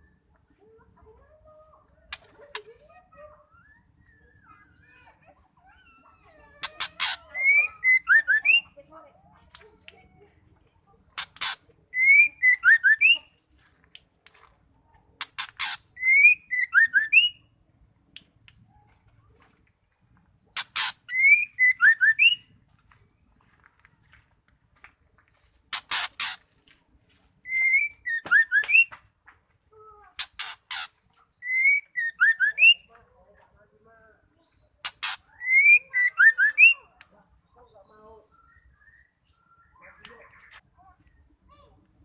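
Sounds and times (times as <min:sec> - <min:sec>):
bird calling with rasps and whistles: 0:06.0 - 0:08.8, 0:11.2 - 0:13.4, 0:15.2 - 0:17.5, 0:20.6 - 0:22.6, 0:27.4 - 0:29.0, 0:30.2 - 0:32.9, 0:34.4 - 0:40.6.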